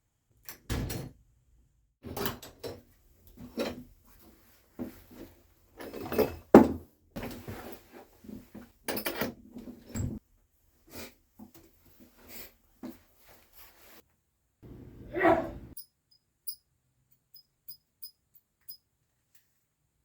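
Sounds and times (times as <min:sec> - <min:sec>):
man sneezing: 0:15.1 - 0:15.7.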